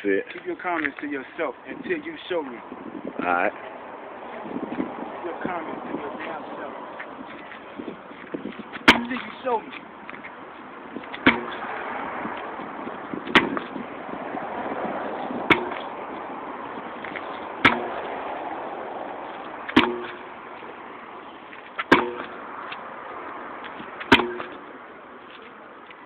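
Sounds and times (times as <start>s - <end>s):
sledgehammer striking a tire: 8.8s - 9.6s, 11.1s - 11.7s, 13.2s - 13.8s, 15.4s - 15.9s, 17.0s - 18.1s, 19.7s - 20.3s, 21.8s - 22.4s, 24.0s - 24.7s.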